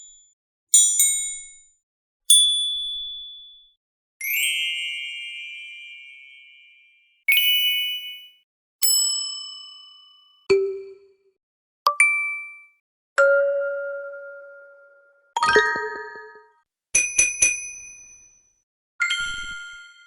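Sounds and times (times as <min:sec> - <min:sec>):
ding and chime sound effects: 0:04.3 - 0:09.1, 0:15.4 - 0:20.0.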